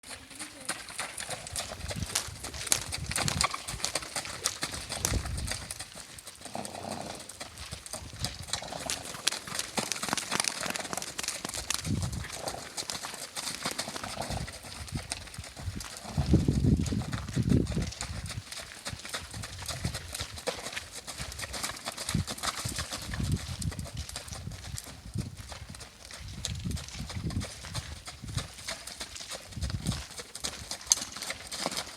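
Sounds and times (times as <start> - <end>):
horse making low rumbling sounds: 1.2 - 13.1, 13.8 - 18.4.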